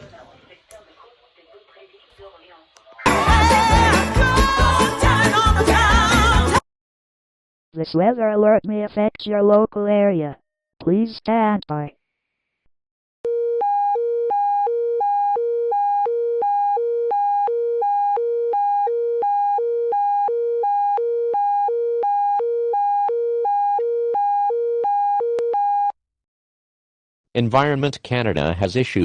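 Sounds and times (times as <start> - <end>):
two-tone emergency alert tone: 13.3 - 26.0.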